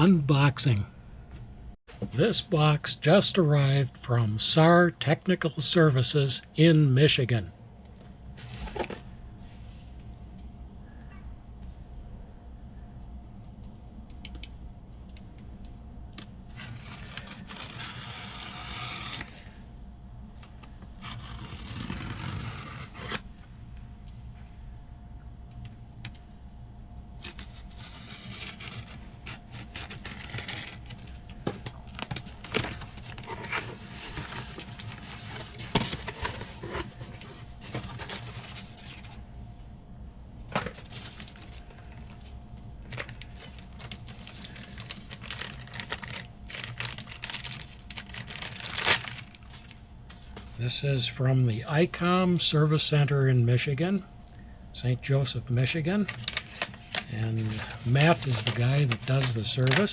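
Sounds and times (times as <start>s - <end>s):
faint steady hum: 0.0s - 59.9s
cardboard rustling and scraping: 8.4s - 9.8s, 27.2s - 39.2s, 40.5s - 42.3s, 42.9s - 50.6s, 56.0s - 59.9s
packing tape ripping: 16.5s - 19.4s, 21.0s - 23.2s, 27.2s - 39.2s, 43.0s - 49.7s, 56.1s - 59.9s.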